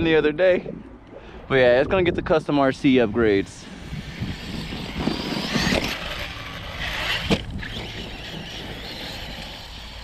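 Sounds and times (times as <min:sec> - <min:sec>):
electric motor whine: 0:03.7 - 0:10.0
tyres on gravel: 0:04.4 - 0:10.0.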